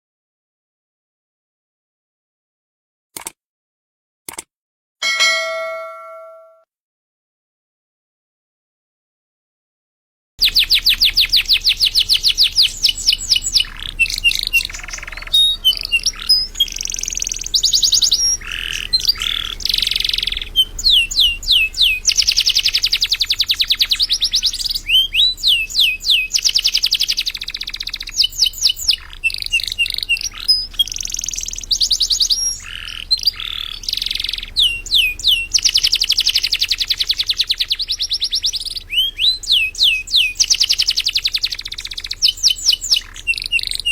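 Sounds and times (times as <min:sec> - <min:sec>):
canary singing trills: 0:05.0 - 0:06.5, 0:10.4 - 0:43.9.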